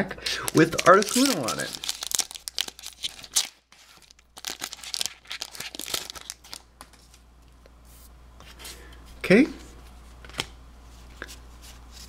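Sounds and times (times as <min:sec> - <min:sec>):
foil wrapper tearing and crinkling: 0:00.5 - 0:06.6.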